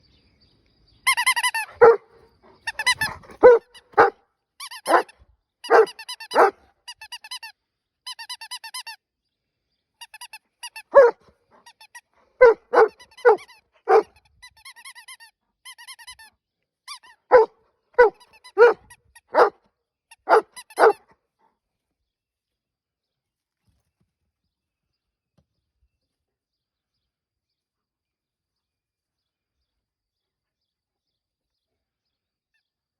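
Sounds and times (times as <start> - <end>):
squeaky dog toy: 1.1 - 2.0, 2.7 - 7.5, 8.1 - 9.0, 10.0 - 16.3, 16.9 - 17.4, 18.0 - 19.5, 20.1 - 21.0
dog barking: 1.6 - 4.2, 4.8 - 6.6, 10.9 - 11.2, 12.4 - 14.2, 17.3 - 19.6, 20.2 - 21.1.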